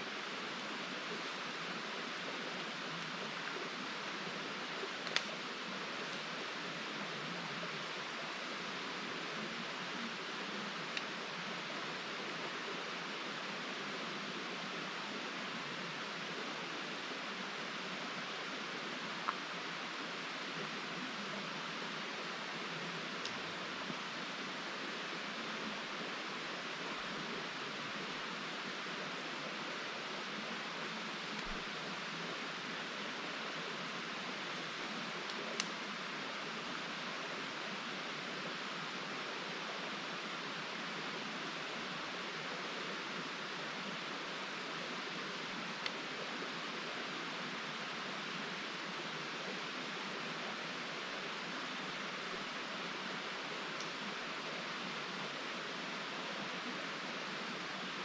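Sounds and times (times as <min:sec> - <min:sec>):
creek water rushing: 0:00.0 - 0:58.0
faint click: 0:04.9 - 0:05.4, 0:10.9 - 0:11.2, 0:34.6 - 0:35.8, 0:45.8 - 0:46.0.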